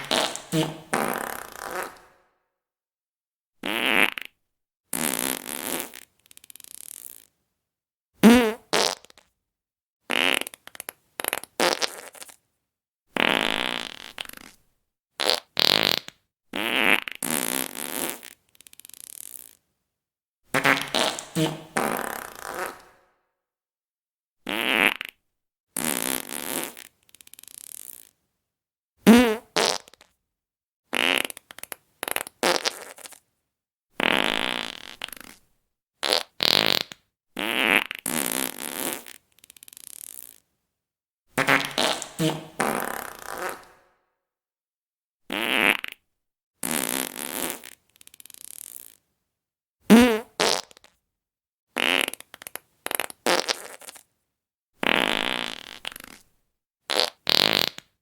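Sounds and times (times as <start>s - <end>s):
fart sound effects: 0.0s - 2.3s, 3.6s - 4.3s, 8.2s - 9.2s, 10.1s - 10.6s, 15.2s - 19.6s, 20.6s - 23.1s, 24.5s - 25.2s, 29.1s - 30.1s, 30.9s - 33.2s, 34.0s - 35.4s, 36.0s - 39.2s, 41.4s - 44.0s, 45.3s - 46.0s, 46.6s - 49.0s, 49.9s - 50.9s, 51.8s - 54.0s, 54.8s - 56.2s, 56.9s - 57.9s.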